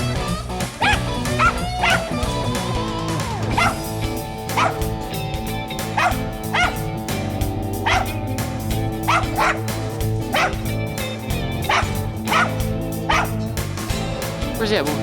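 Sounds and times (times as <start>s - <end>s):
guitar music: 0.0s - 15.0s
dog barking: 0.8s - 2.2s, 3.5s - 3.9s, 4.5s - 5.0s, 5.9s - 7.0s, 7.8s - 8.2s, 9.0s - 10.8s, 11.6s - 13.5s.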